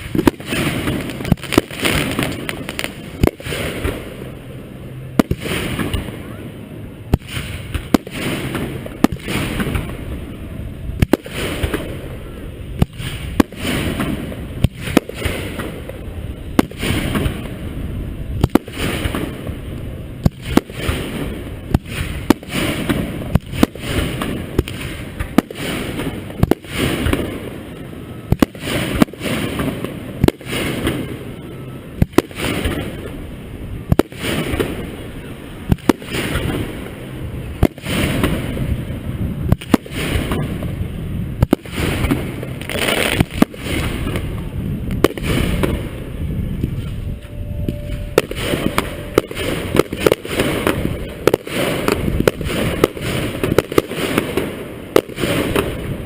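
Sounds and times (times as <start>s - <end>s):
fireworks crackling: 0.0s - 56.0s
low rumbling echo: 0.0s - 56.0s.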